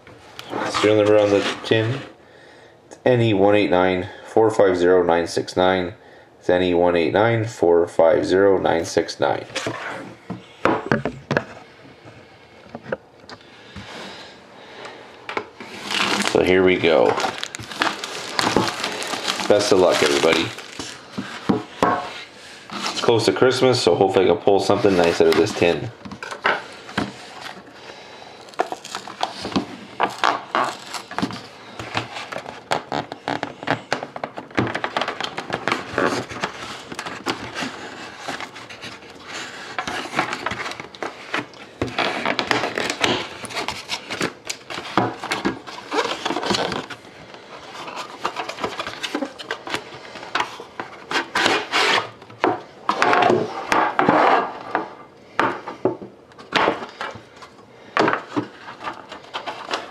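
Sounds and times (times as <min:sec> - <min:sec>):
tin contents rubbing and scraping: 0:00.4 - 0:02.1, 0:15.6 - 0:23.4, 0:24.6 - 0:25.9.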